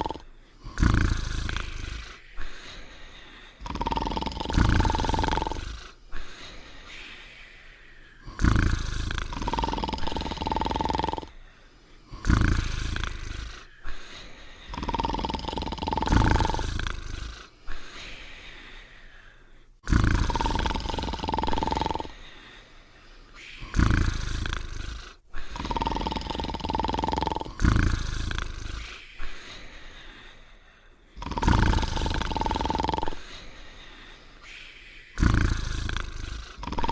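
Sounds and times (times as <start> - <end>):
cartoon dog snoring: 0.0 - 2.8, 3.5 - 6.4, 8.2 - 11.4, 12.1 - 18.1, 19.8 - 22.4, 23.4 - 29.7, 31.1 - 33.6, 35.1 - 36.9.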